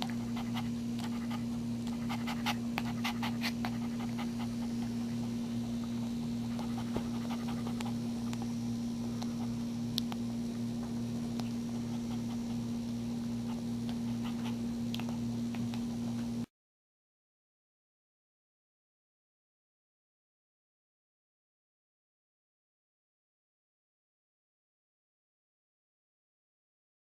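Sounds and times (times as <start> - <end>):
dog panting: 0.0 - 5.6, 6.4 - 8.5, 11.6 - 16.4
low electrical hum: 0.0 - 16.5.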